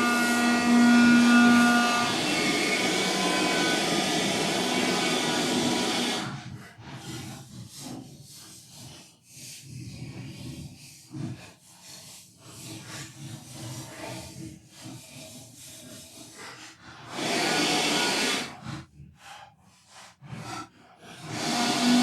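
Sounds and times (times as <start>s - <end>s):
vacuum cleaner running: 0.0s - 6.4s, 17.1s - 18.5s, 21.3s - 22.0s.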